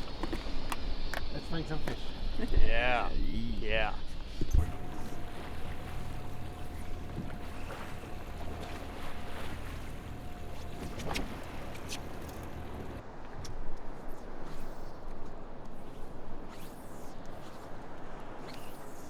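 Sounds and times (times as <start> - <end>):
wind and water noise: 0.0 - 19.0
thin steady whine: 1.1 - 13.0
boat motor running: 4.4 - 13.0.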